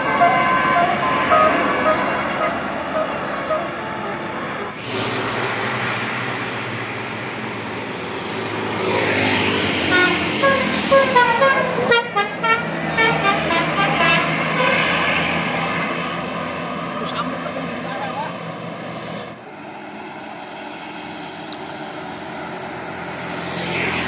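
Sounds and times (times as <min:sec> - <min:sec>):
road traffic: 0:00.0 - 0:24.0
vehicle horn tooting: 0:09.9 - 0:14.9.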